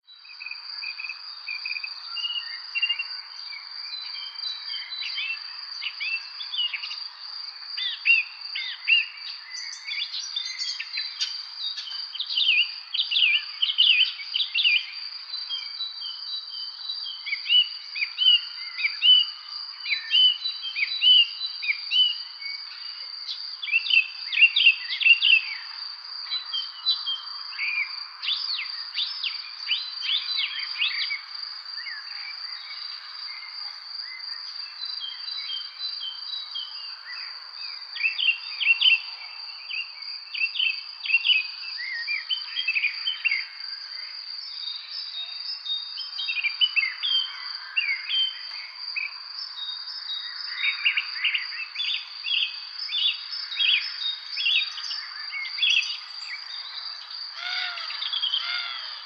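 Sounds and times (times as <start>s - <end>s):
songbirds chirping: 0.0s - 59.0s
high-pitched insect trill: 27.2s - 59.0s.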